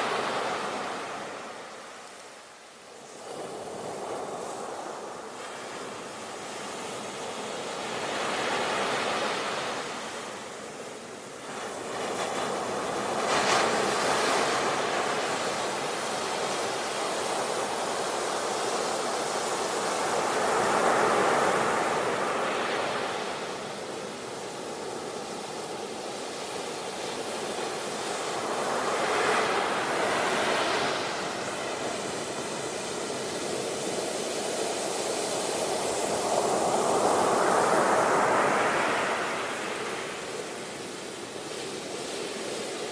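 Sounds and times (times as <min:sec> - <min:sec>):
ocean surf breaking: 0:27.3 - 0:40.9.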